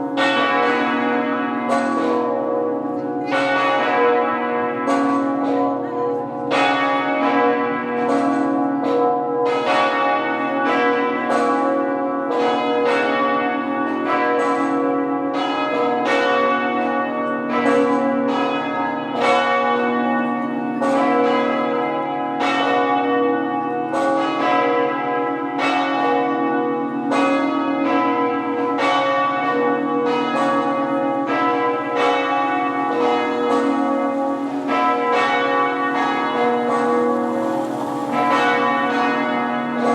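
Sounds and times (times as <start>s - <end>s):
muffled church bells ringing: 0.0s - 39.9s.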